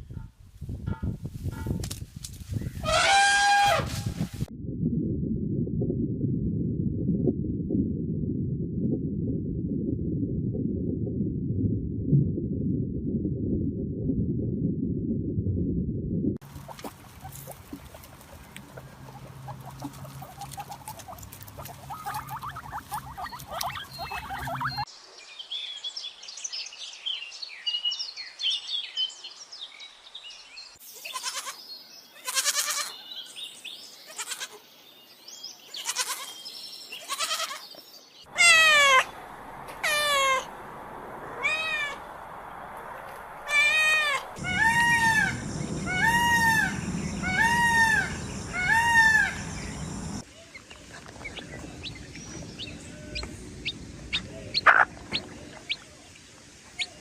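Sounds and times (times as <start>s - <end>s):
high twittering calls: 16.5s - 24.9s, 43.4s - 57.0s
loud bleats: 32.2s - 32.9s, 35.8s - 36.3s, 37.0s - 37.6s, 38.3s - 39.1s, 39.8s - 40.5s
short harsh animal calls: 38.3s - 39.2s, 39.8s - 40.5s, 54.5s - 54.9s.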